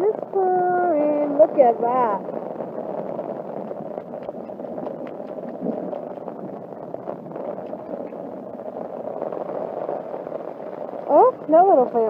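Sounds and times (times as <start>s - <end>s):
heavy rain on an umbrella: 0.0s - 12.0s
sharp ticks of raindrops: 0.0s - 12.0s.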